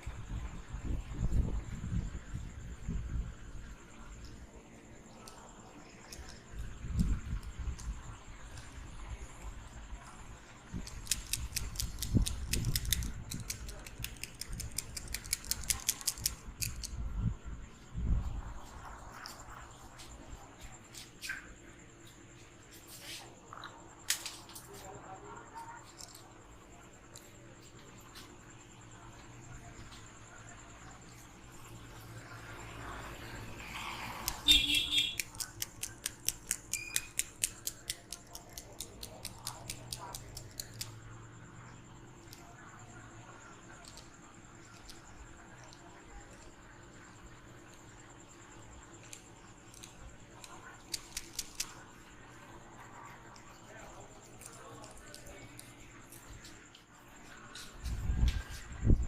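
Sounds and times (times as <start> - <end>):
scissors snipping: 10.8 - 16.9, 35.1 - 40.9, 49.1 - 51.8.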